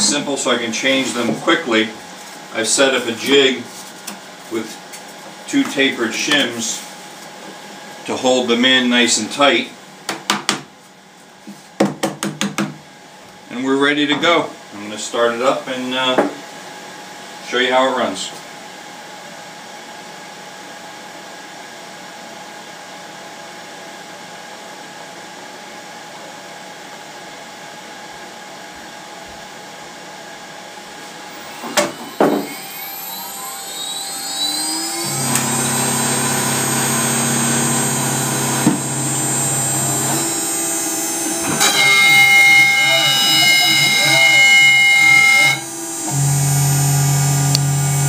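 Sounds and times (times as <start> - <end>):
machine hum: 30.6 - 48.0
router spindle whine: 31.1 - 48.0.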